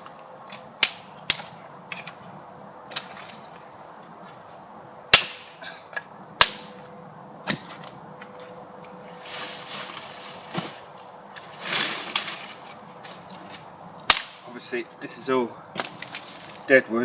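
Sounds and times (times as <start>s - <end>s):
dry sticks snapping: 0.0s - 2.2s, 5.1s - 8.6s, 12.1s - 14.5s
twigs crackling: 0.0s - 16.7s.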